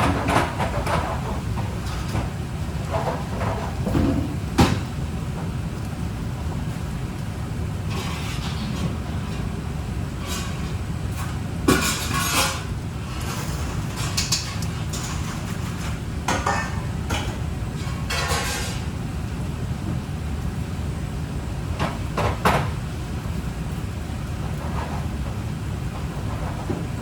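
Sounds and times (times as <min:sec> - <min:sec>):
kitchen utensils clattering: 0:00.0 - 0:02.3, 0:07.9 - 0:09.5, 0:10.2 - 0:18.9.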